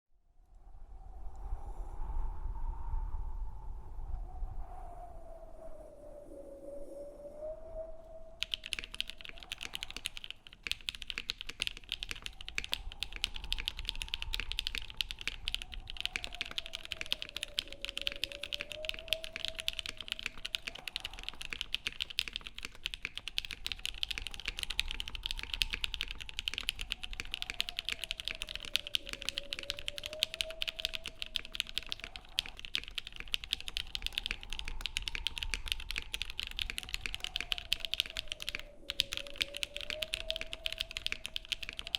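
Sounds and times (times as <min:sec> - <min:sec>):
fast typing on mechanical keyboard: 0:08.4 - 0:41.9.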